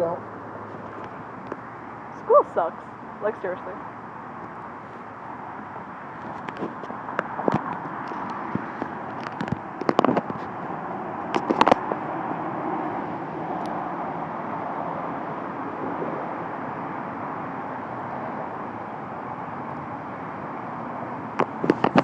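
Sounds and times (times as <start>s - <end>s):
road traffic passing cars: 0.0s - 22.0s.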